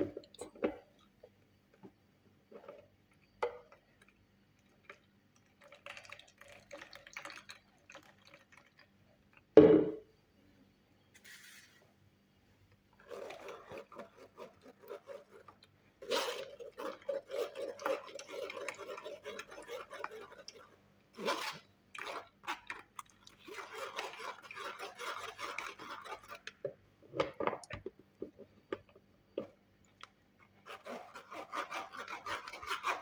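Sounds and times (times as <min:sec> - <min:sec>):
juice being poured: 0:04.8 - 0:09.3
loud knock: 0:09.6 - 0:10.0.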